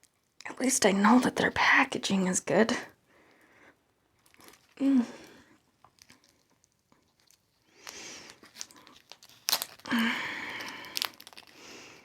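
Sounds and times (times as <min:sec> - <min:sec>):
plastic packaging crinkling and tearing: 0:04.1 - 0:12.0.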